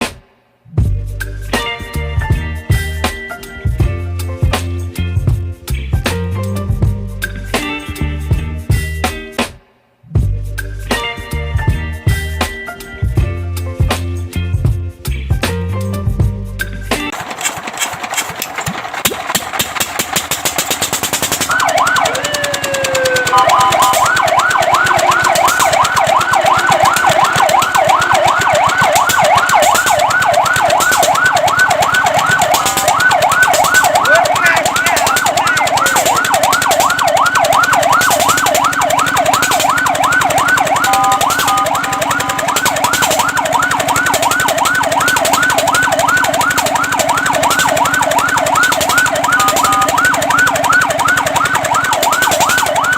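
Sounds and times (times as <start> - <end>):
engine ticking: 17.1 - 52.9
fire truck siren: 20.1 - 52.9
two-note siren tone: 21.5 - 52.9.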